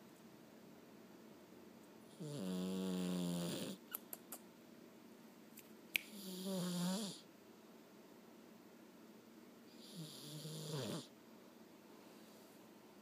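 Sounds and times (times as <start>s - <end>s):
cat snoring: 2.1s - 3.8s, 6.1s - 7.2s, 9.7s - 11.1s.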